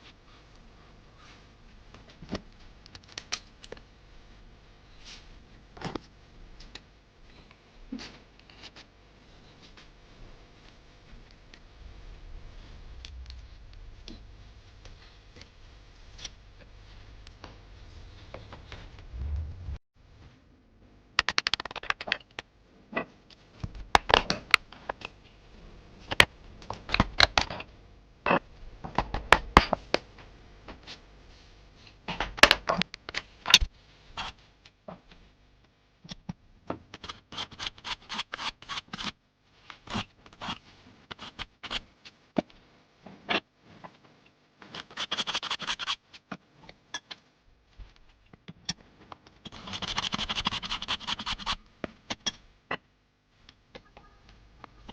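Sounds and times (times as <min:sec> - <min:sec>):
scratching and scraping wood: 0:44.7 - 0:46.0, 0:49.5 - 0:51.6.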